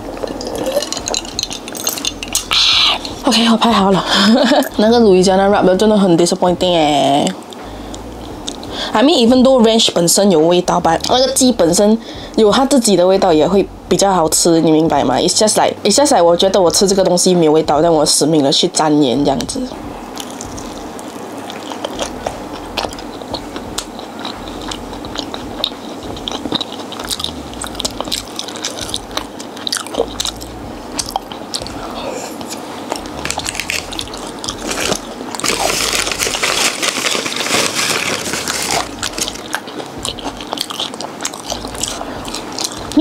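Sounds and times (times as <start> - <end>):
person chewing crunchy food: 0.0 - 3.3, 19.8 - 43.0.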